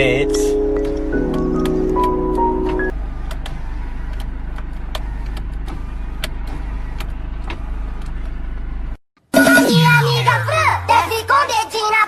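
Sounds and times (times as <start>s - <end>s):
car cabin rumble: 0.0s - 8.7s.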